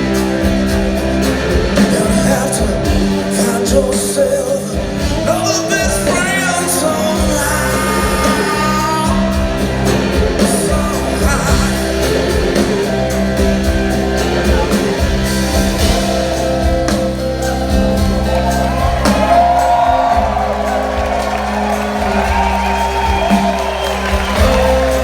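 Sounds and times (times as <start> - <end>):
blues-rock band playing: 0.0 - 25.0
person singing: 0.0 - 25.0.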